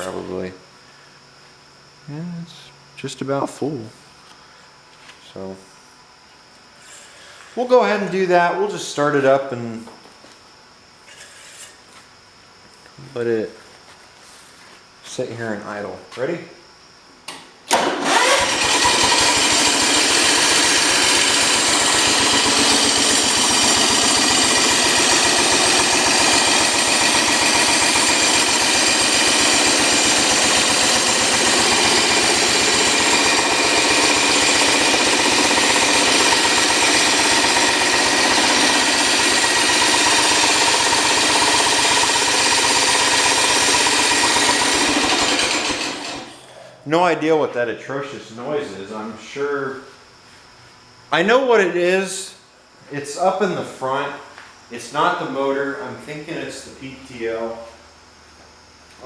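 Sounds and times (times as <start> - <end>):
garden tractor engine rattling: 17.7 - 46.4.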